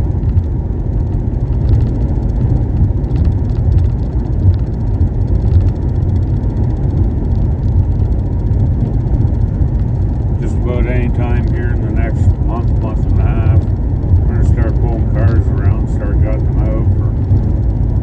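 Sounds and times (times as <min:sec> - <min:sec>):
road and engine rumble in a car: 0:00.0 - 0:18.0.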